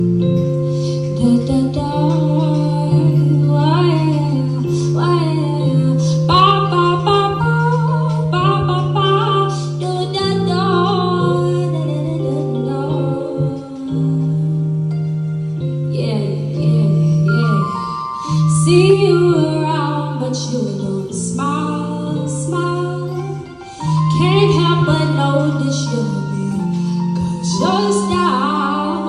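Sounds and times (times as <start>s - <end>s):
held accompaniment chords: 0.0s - 29.0s.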